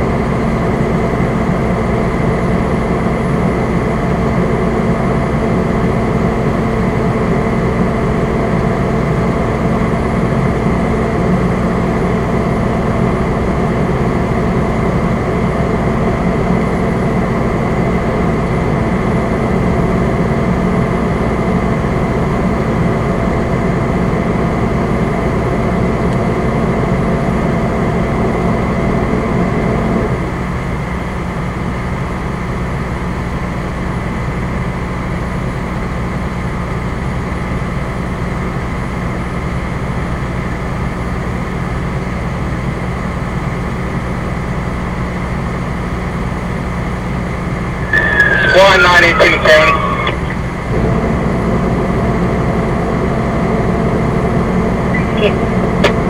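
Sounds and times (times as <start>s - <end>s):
fire engine droning: 39.7s - 56.0s
road noise: 47.8s - 51.0s.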